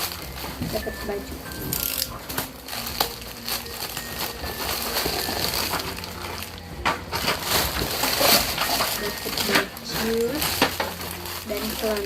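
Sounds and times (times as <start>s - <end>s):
packaging rustling and crinkling: 0.0s - 12.0s.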